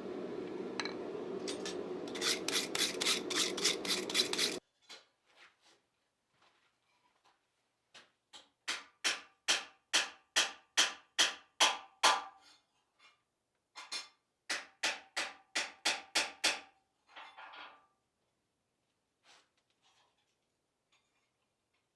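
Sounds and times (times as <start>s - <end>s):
hammer striking steel: 0.5s - 4.6s
metal clatter: 0.8s - 4.6s.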